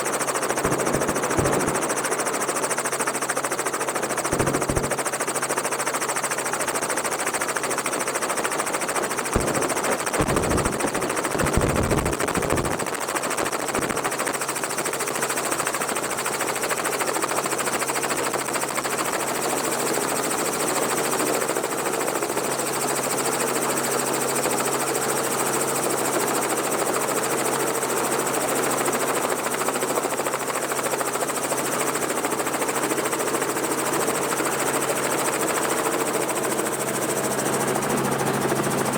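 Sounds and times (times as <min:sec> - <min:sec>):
helicopter rotor and engine drone: 0:00.0 - 0:38.9
wind buffeting microphone: 0:09.4 - 0:12.9.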